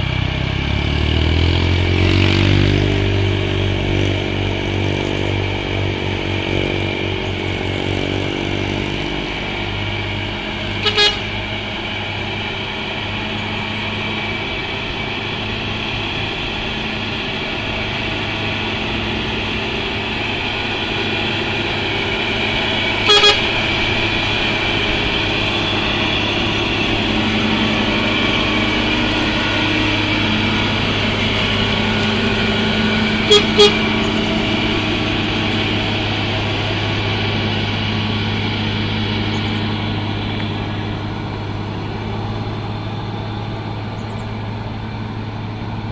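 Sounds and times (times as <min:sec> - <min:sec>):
heavy truck engine under load: 0:00.0 - 0:45.9
truck horn toots: 0:10.7 - 0:11.7, 0:20.5 - 0:37.3.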